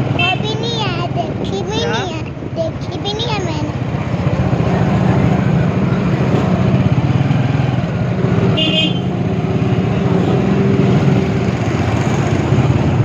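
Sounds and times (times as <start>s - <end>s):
motorcycle engine running: 0.0s - 13.0s
vehicle horn toot: 8.5s - 9.1s.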